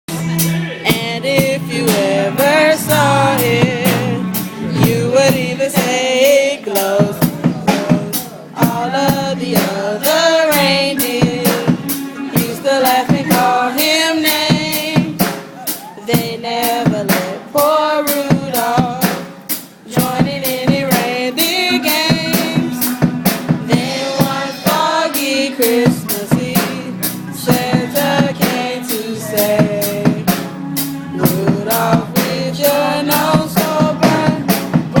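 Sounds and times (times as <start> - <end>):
drum kit playing fast: 0.1 - 35.0.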